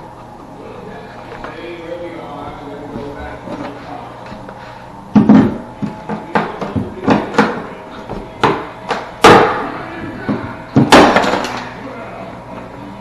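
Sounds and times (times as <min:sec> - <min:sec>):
knocks and bangs on wood: 0:05.2 - 0:07.6, 0:08.4 - 0:09.6, 0:10.2 - 0:11.6.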